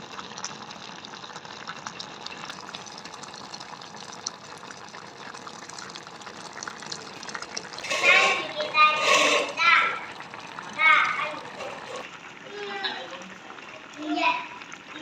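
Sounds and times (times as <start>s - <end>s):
water rushing and bubbling: 3.4s - 12.1s.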